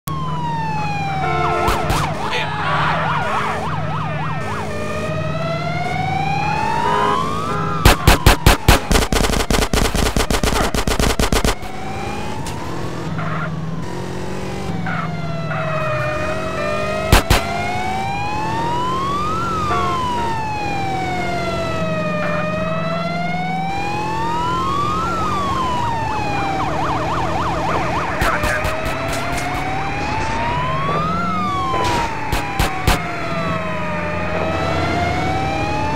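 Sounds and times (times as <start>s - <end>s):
police siren wailing: 0.1s - 35.9s
loud sharp clicks: 17.1s - 17.5s.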